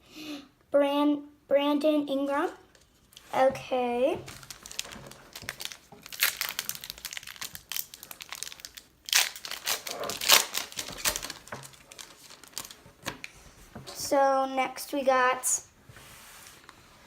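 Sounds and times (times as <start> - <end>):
plastic wrapper crinkling and tearing: 4.2 - 13.4.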